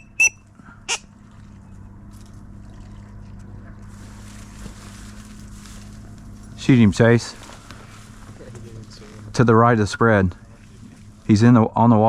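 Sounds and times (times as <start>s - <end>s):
high whistled peeps: 0.0s - 1.0s
low steady hum: 0.0s - 12.0s.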